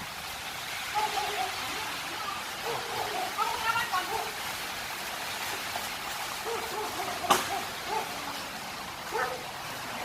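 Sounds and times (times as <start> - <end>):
rain: 0.0 - 10.0
dog yelping: 0.9 - 1.7, 2.6 - 3.4, 4.1 - 4.3, 6.4 - 8.2, 9.1 - 9.5.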